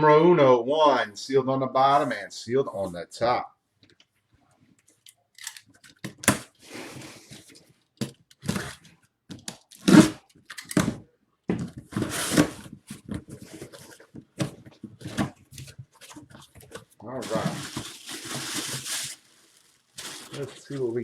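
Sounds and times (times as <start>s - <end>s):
tape ripping: 9.8s - 10.2s, 17.2s - 20.9s
cardboard crinkling: 11.6s - 21.0s.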